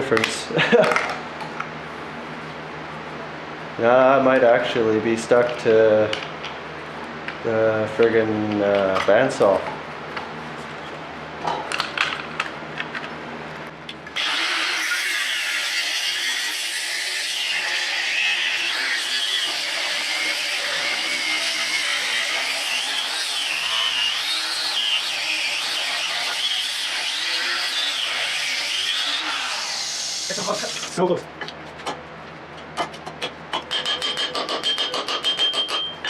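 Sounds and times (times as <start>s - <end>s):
bandsaw cutting steel: 14.2s - 31.0s.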